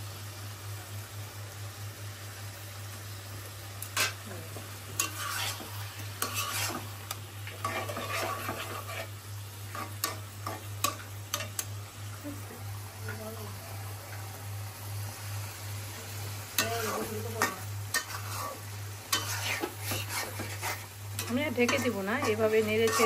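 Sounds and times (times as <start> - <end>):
utensil stirring and scraping pan: 4.8 - 11.7, 16.5 - 23.0.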